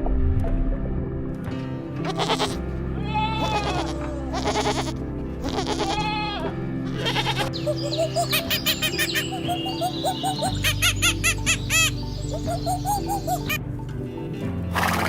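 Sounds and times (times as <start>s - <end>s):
background music: 0.0s - 15.0s
goat bleating: 2.0s - 9.3s.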